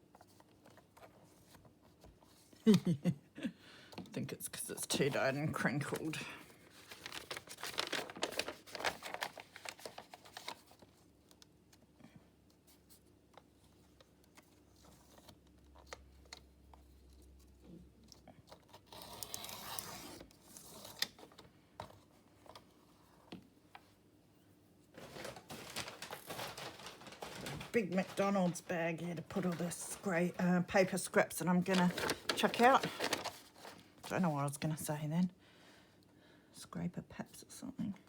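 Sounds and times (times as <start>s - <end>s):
paper rustling and crinkling: 4.8s - 11.4s, 24.9s - 34.8s.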